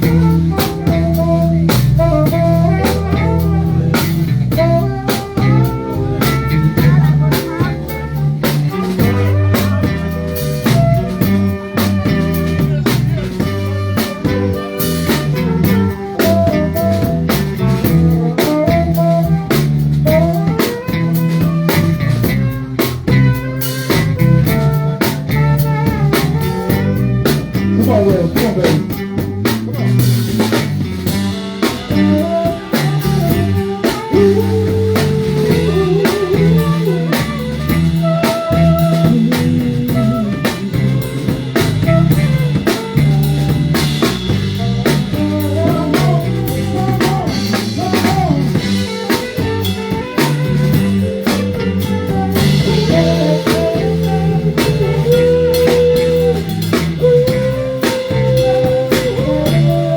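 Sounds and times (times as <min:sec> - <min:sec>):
drum kit beat: 0:00.0 - 0:59.9
guitar melody: 0:00.0 - 0:59.9.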